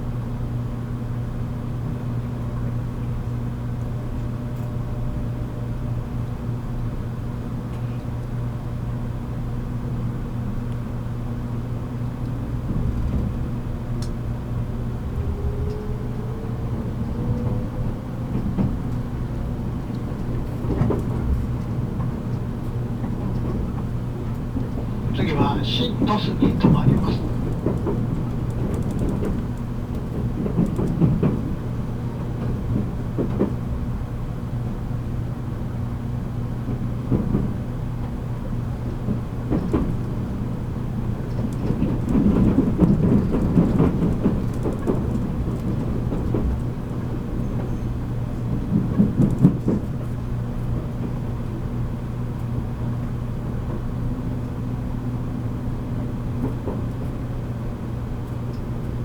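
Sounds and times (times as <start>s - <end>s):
wheels rumbling on rail: 0.0s - 59.0s
train motor hum: 10.1s - 35.2s.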